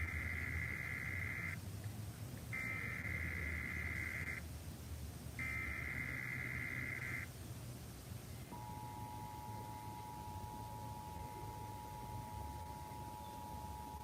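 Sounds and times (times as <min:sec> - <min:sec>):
digital data tone bursts: 0:00.0 - 0:01.6, 0:05.4 - 0:07.3.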